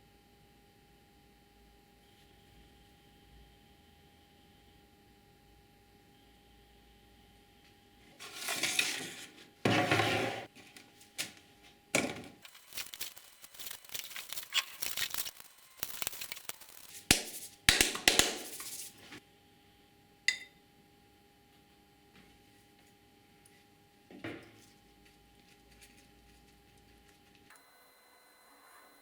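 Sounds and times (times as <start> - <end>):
hard objects clattering: 8.2 - 10.5
clink: 20.3 - 20.6.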